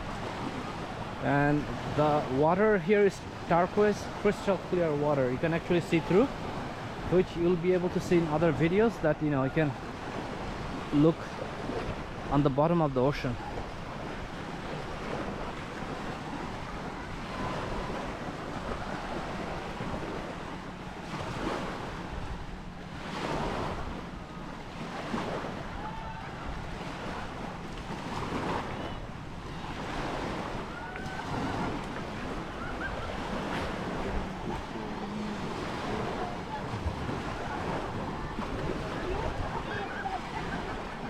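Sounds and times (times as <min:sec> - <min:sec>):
waves washing on sandy beach: 0:00.0 - 0:41.0
wind rumbling on microphone: 0:13.4 - 0:41.0.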